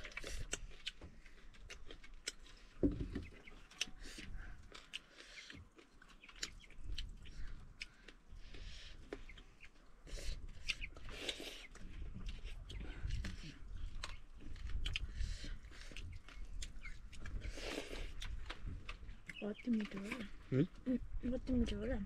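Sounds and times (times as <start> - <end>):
chewing and crunching: 0.0 - 22.0
wet mouth clicks and smacks: 3.7 - 9.4.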